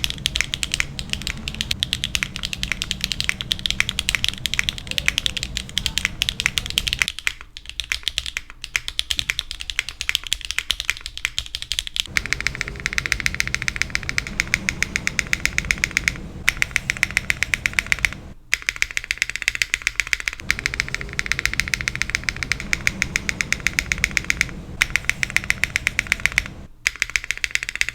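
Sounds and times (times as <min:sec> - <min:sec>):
keyboard spacebar clicking: 0:08.8 - 0:27.9.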